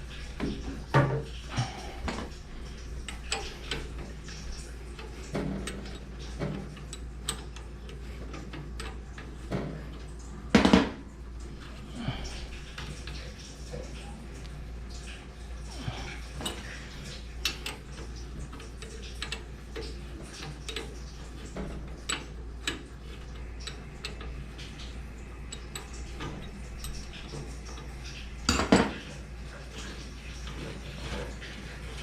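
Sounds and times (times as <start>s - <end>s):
metal knocks: 10.6s - 11.0s.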